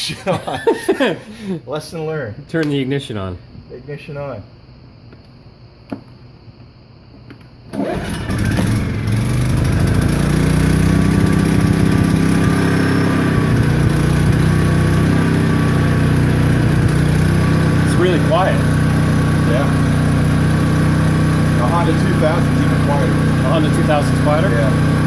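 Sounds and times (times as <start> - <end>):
generator engine running: 7.7 - 25.0.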